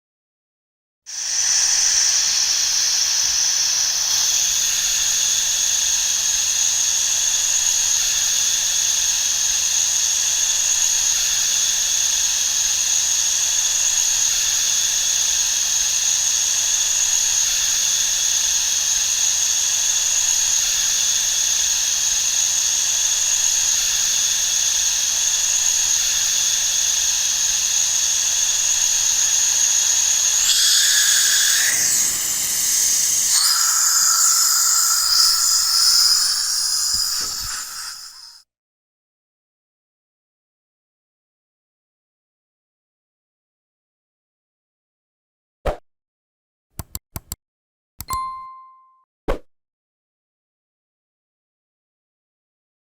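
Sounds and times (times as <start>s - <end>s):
high whistling tone: 30.4s - 38.4s
air hissing from tyre: 30.5s - 38.4s.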